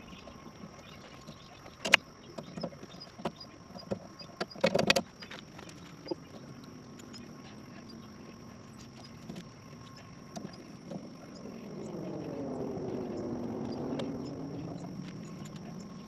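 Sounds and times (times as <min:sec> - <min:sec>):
insects buzzing: 0:00.0 - 0:16.0
engine passing by: 0:10.6 - 0:16.0.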